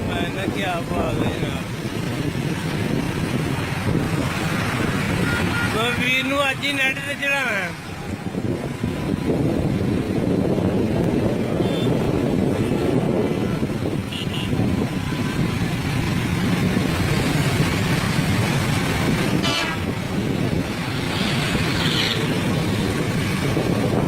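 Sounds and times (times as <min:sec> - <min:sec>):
vehicle engine and road noise: 0:00.0 - 0:24.0
short horn toots: 0:19.4 - 0:19.8.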